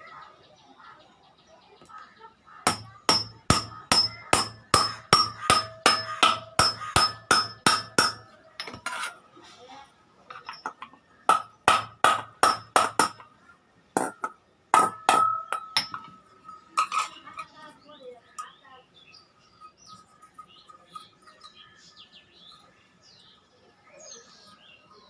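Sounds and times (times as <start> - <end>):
hammer striking iron: 2.7 - 9.0, 10.4 - 13.2, 14.0 - 17.0.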